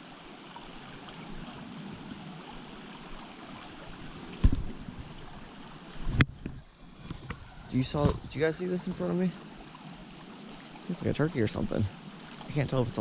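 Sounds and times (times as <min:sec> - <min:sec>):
creek running over rocks: 0:00.0 - 0:13.0
dull thump: 0:04.4 - 0:04.9.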